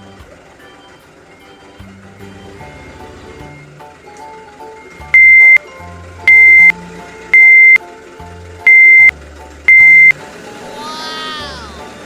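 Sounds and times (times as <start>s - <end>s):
high electronic beeps: 5.2s - 5.6s, 6.3s - 6.7s, 7.4s - 7.8s, 8.7s - 9.1s, 9.7s - 10.2s.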